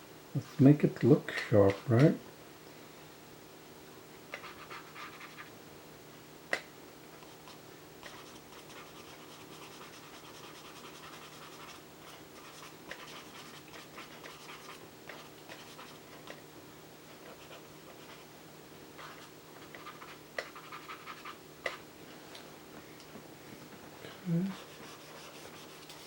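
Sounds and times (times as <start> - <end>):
faint steady hum: 0.0 - 26.0
pencil scratching on paper: 4.4 - 5.5, 7.3 - 16.0, 17.3 - 18.3, 19.0 - 21.8, 24.6 - 26.0.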